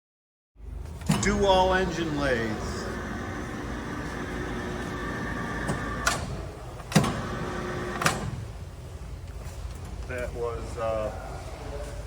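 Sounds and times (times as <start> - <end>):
lathe gear whine: 1.4 - 6.1.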